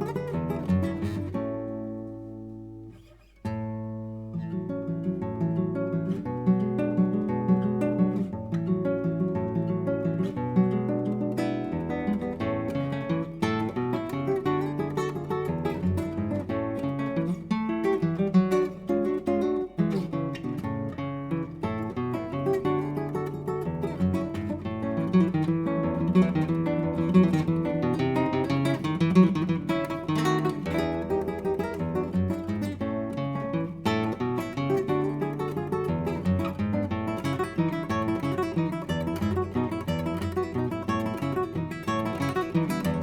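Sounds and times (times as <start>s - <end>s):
solo acoustic guitar: 0.0s - 43.0s.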